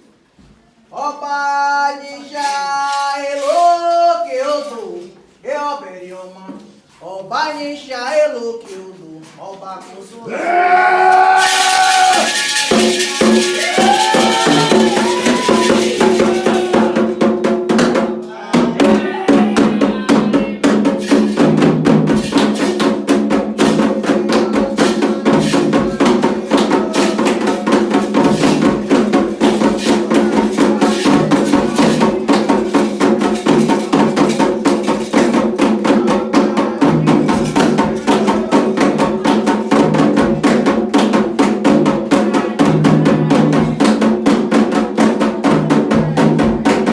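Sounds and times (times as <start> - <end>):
person singing: 10.3 - 17.4, 18.2 - 20.8, 24.0 - 28.2
hand drums playing: 11.2 - 46.9
bell playing rhythm: 11.5 - 17.8, 20.9 - 40.3.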